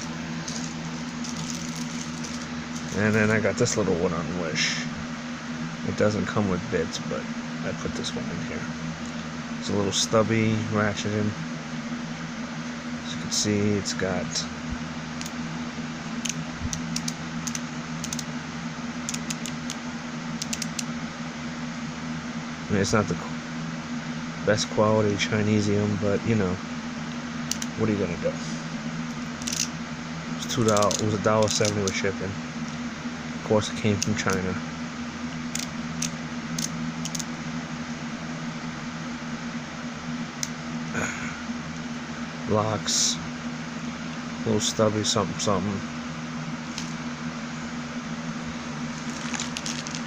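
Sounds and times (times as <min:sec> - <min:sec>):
fan hum: 0:00.0 - 0:50.0
ratchet screwdriver clicking: 0:29.4 - 0:29.7, 0:35.6 - 0:37.2.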